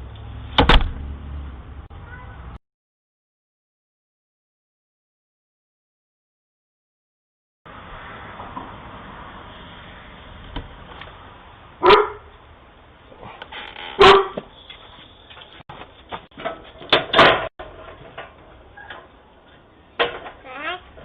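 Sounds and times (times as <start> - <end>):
dog barking: 11.8 - 12.3, 14.0 - 14.4.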